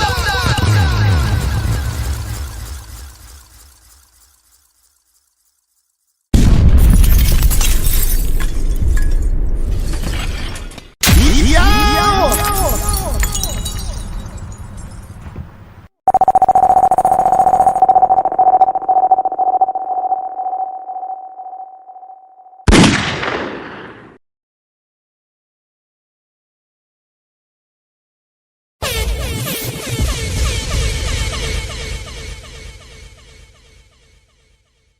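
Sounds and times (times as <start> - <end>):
steady beep tone: 16.1 - 22.6.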